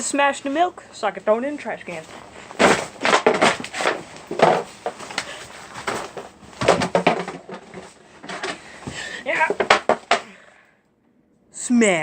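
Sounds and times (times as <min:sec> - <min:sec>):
milk container being smashed: 0:06.6 - 0:07.8.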